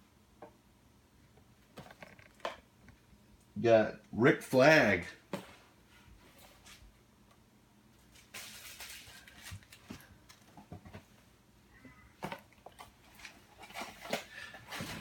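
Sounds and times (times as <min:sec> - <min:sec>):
packaging wrapping rustling: 0:08.0 - 0:10.5.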